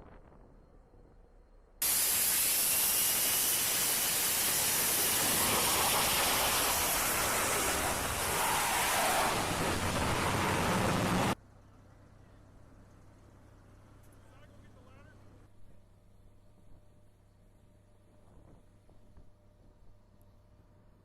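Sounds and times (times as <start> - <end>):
jet engine roaring: 1.8 - 11.4.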